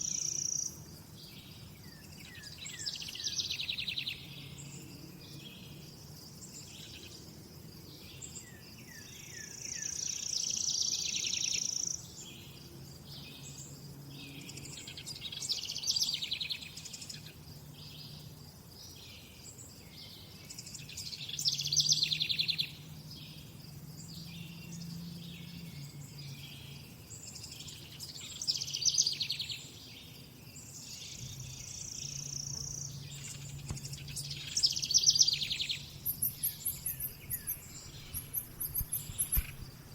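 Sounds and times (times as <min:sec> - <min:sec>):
bird song with trill: 0:00.0 - 0:39.9
faint background bird chirping: 0:00.0 - 0:39.9.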